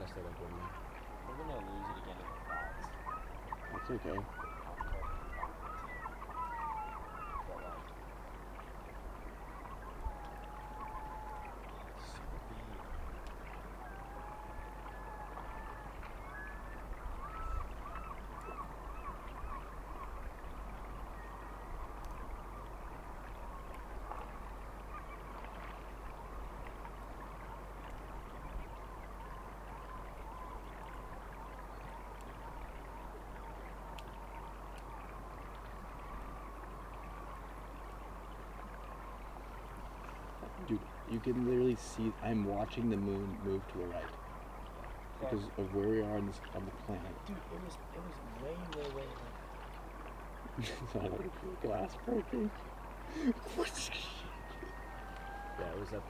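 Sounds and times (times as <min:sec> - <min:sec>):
distant birds calling: 0:00.0 - 0:56.0
outdoor background hiss: 0:29.0 - 0:56.0.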